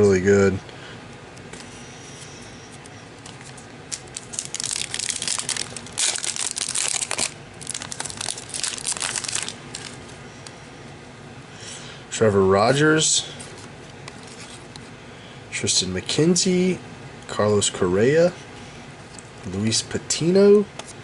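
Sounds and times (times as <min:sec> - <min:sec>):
plastic wrapper tearing and crinkling: 0:03.4 - 0:10.0.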